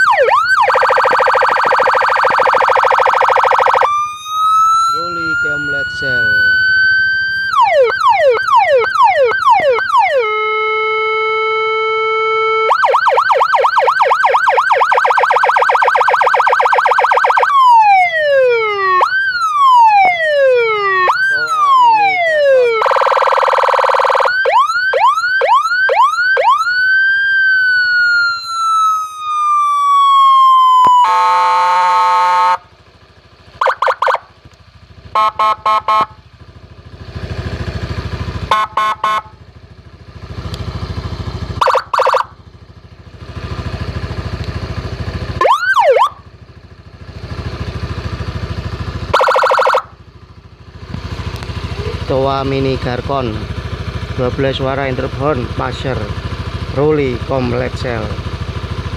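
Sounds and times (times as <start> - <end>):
electronic siren through horn loudspeaker: 0.0 - 32.7, 33.6 - 34.3, 35.0 - 36.3, 37.3 - 39.4, 41.4 - 42.4, 43.4 - 46.3, 48.5 - 50.0
short horn blasts: 31.0 - 32.7, 35.1 - 36.2, 38.5 - 39.4.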